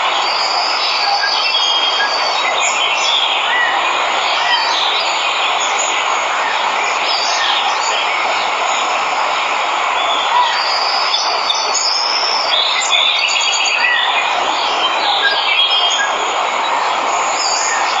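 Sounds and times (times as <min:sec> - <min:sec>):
waterfall rushing: 0:00.0 - 0:18.0
birds chirping and whistling: 0:10.0 - 0:16.3.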